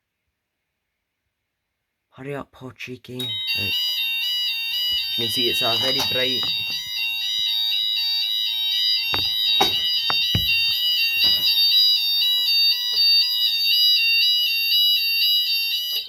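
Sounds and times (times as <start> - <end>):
steady high-pitched alarm tone: 3.2 - 16.0
two-pitch alternating alarm tone: 3.2 - 16.0
short knocks: 5.7 - 7.0, 9.2 - 11.6.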